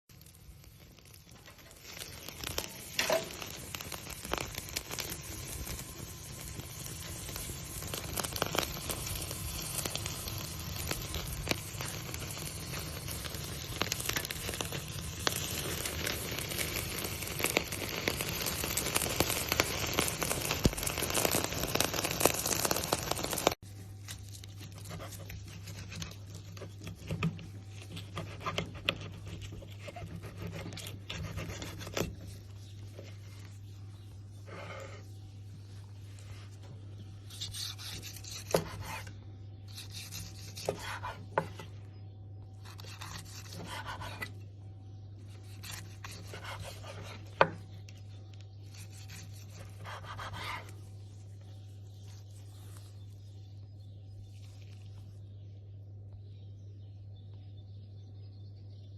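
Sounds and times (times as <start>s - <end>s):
steak sizzling on a grill: 0.1s - 23.6s
low steady hum: 0.1s - 58.9s.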